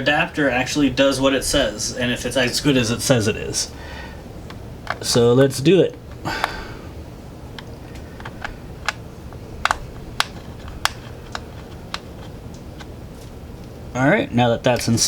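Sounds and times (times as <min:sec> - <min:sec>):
clicks of computer parts: 0:07.6 - 0:09.0, 0:09.6 - 0:12.9.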